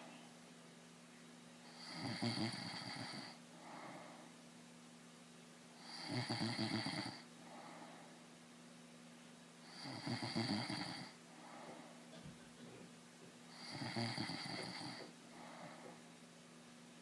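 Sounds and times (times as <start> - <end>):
man snoring: 1.7 - 3.4, 5.8 - 7.2, 9.7 - 11.2, 13.6 - 15.1
soft breath: 3.2 - 4.4, 7.4 - 8.3, 11.3 - 12.1, 14.5 - 16.1.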